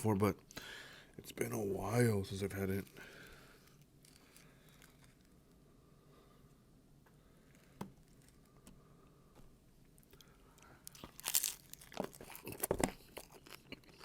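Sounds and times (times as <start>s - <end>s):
chewing: 10.0s - 14.0s
crunchy bites into taco shell: 10.0s - 14.0s.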